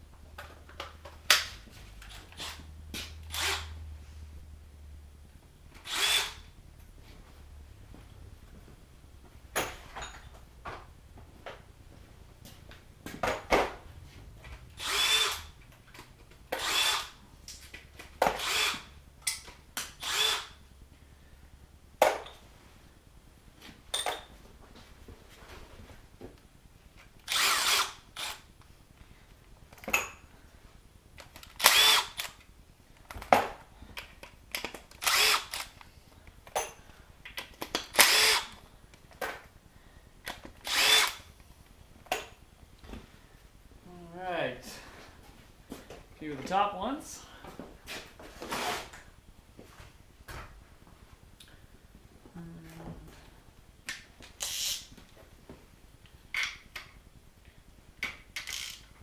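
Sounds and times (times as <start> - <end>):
cordless drill bursts: 3.2 - 3.8, 5.8 - 6.5, 14.8 - 15.6, 16.5 - 17.2, 18.3 - 18.9, 20.0 - 20.6, 27.3 - 28.5, 31.5 - 32.4, 35.0 - 35.8, 37.9 - 38.6, 40.6 - 41.3, 54.4 - 54.9, 58.4 - 58.9.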